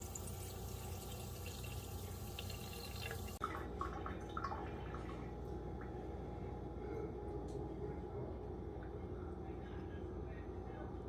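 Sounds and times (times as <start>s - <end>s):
water dripping and trickling: 0.0s - 6.0s
steady low hum: 0.0s - 11.0s.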